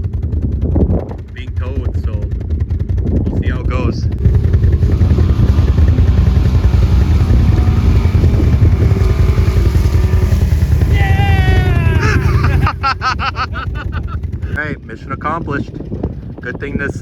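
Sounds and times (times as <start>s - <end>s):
atv engine running under load: 0.0s - 16.9s
person shouting: 10.8s - 12.8s.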